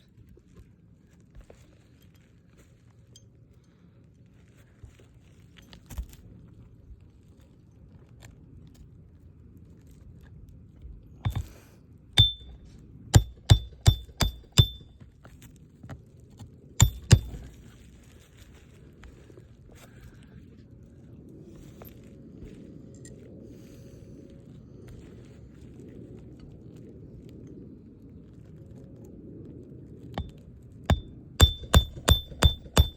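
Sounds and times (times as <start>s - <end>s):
hammer driving nails: 11.3s - 11.5s, 12.2s - 12.6s, 13.2s - 14.9s, 16.8s - 17.4s, 30.9s - 32.9s.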